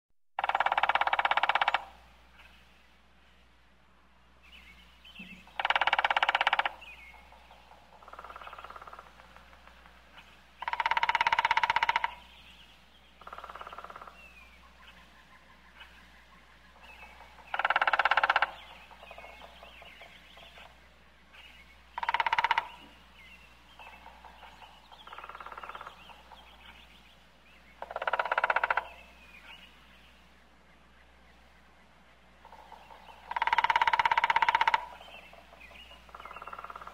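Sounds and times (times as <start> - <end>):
woodpecker drumming on wood: 0.4 - 2.0, 5.2 - 12.3, 13.2 - 14.2, 16.8 - 20.8, 22.0 - 23.0, 23.8 - 26.8, 27.8 - 29.1, 32.4 - 36.9.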